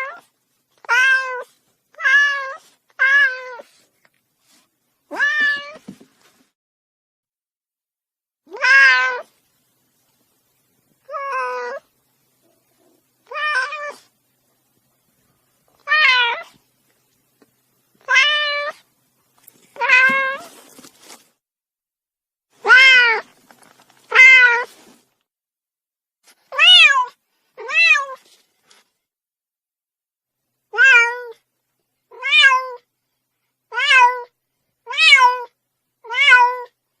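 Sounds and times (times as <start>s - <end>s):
cat meowing: 0.8s - 3.7s, 5.1s - 5.8s, 8.5s - 9.3s, 11.1s - 11.9s, 12.8s - 14.1s, 15.8s - 16.6s, 18.0s - 18.8s, 19.8s - 20.5s, 22.6s - 23.3s, 24.1s - 24.7s, 26.5s - 28.2s, 30.7s - 31.4s, 32.1s - 32.8s, 33.7s - 34.3s, 34.9s - 36.8s.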